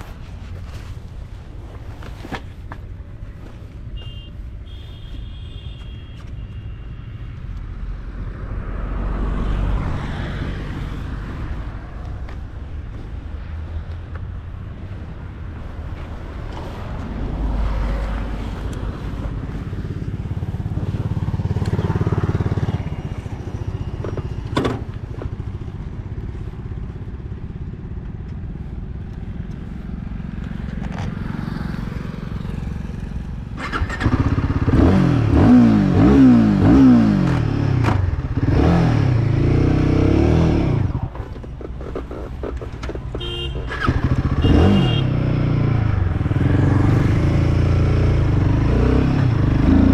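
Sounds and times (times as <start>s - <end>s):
motorcycle engine revving: 29.6s - 49.9s.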